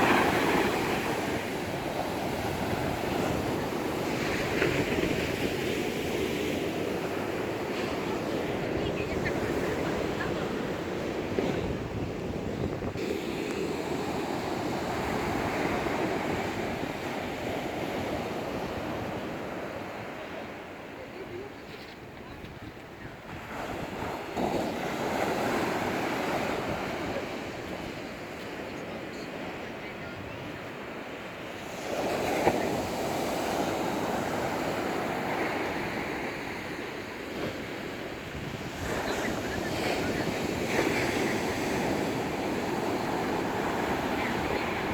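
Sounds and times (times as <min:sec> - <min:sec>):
wind on microphone: 0:00.0 - 0:20.1, 0:21.3 - 0:28.2, 0:37.3 - 0:44.9
sea surf washing in: 0:00.0 - 0:44.9
waves breaking: 0:00.0 - 0:44.9.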